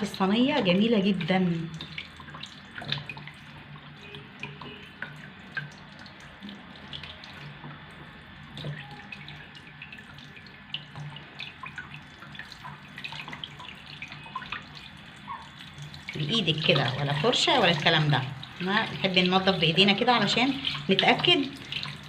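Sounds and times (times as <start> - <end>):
water splashes and wet knocks: 0.0 - 22.0
tap running into sink: 6.4 - 9.5.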